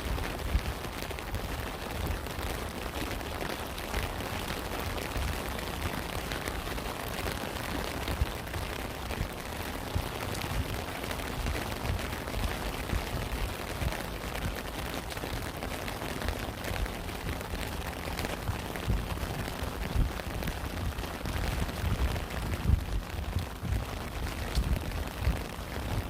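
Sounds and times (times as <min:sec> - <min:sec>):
steady rain: 0:00.0 - 0:26.0.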